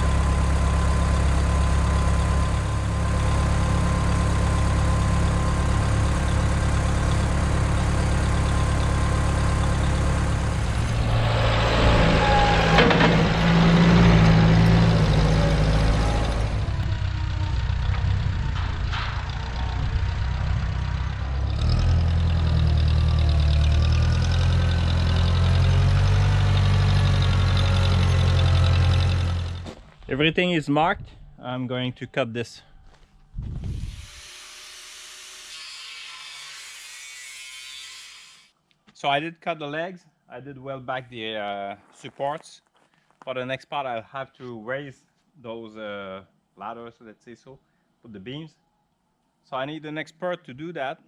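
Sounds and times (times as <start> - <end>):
vehicle engine running: 0.0 - 30.1.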